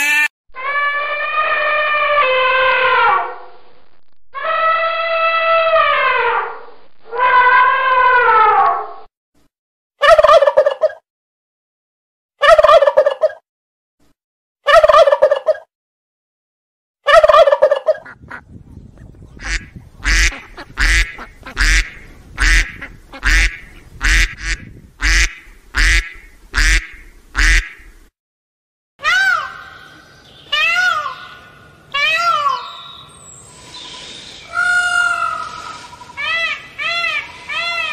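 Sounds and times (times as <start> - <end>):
fowl calling: 19.4 - 27.9.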